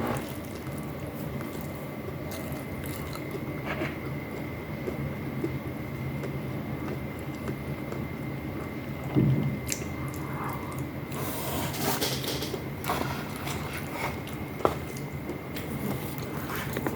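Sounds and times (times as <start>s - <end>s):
faint hum: 0.0s - 16.9s
person chewing and eating: 0.0s - 16.9s.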